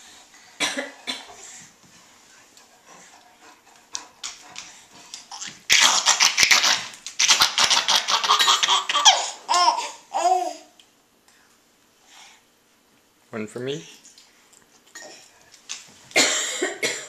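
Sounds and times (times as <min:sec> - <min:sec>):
baby laughing: 0:05.3 - 0:10.7.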